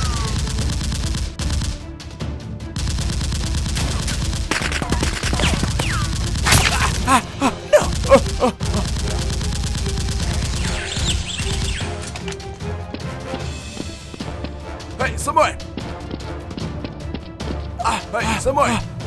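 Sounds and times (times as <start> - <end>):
rapid automatic gunfire: 0.0 - 1.9, 2.8 - 7.1, 7.8 - 11.8
background music: 0.0 - 19.0.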